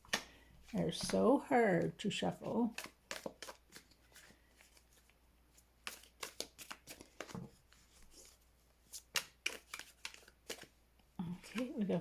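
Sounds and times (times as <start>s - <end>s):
cards being shuffled: 1.8s - 10.8s, 11.4s - 12.0s.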